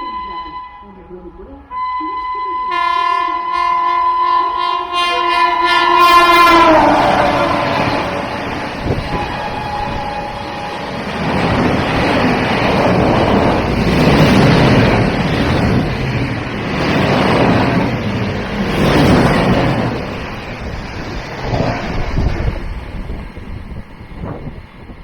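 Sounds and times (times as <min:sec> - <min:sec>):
train horn: 0:00.0 - 0:13.7
express train rushing past: 0:01.7 - 0:25.0
wind buffeting microphone: 0:05.2 - 0:25.0.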